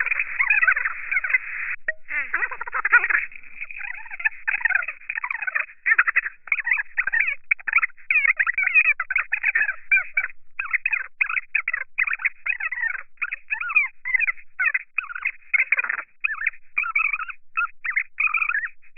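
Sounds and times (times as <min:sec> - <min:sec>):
sped-up women's chatter: 0:00.0 - 0:08.0.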